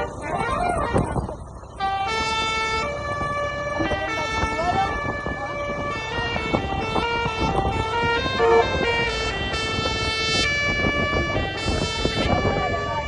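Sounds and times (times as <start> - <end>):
low rumble of truck: 0.0 - 13.0
multi-tone air horn playing tune: 6.2 - 12.9.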